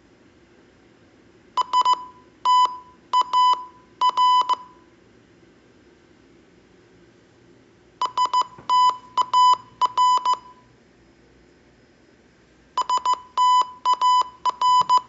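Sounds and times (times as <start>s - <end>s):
morse code beeps: 1.6s - 4.8s, 8.0s - 10.7s, 12.8s - 15.0s.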